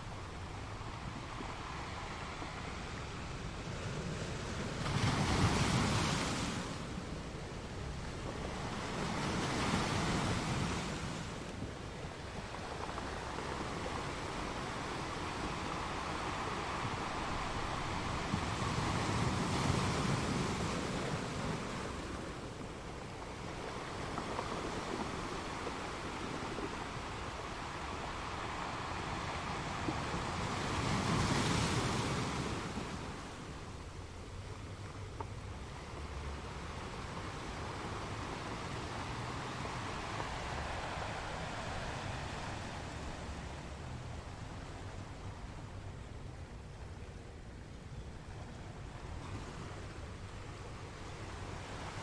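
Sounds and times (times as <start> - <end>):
surf washing: 0.0 - 47.5
waves breaking on rocks: 3.8 - 34.3.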